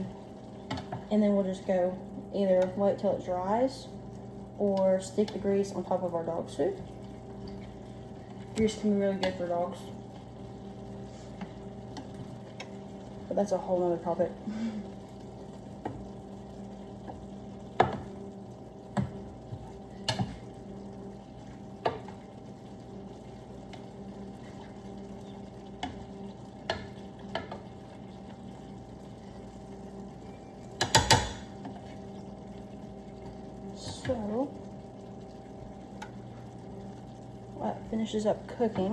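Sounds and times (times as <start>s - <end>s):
meat and onions frying in a pan: 0.0s - 38.9s
steady low hum: 0.0s - 38.9s
utensil knocking against pan: 30.8s - 31.4s.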